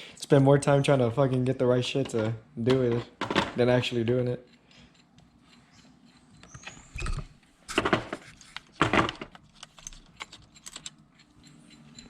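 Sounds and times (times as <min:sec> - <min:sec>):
small ticks and clicks: 0:09.4 - 0:12.0.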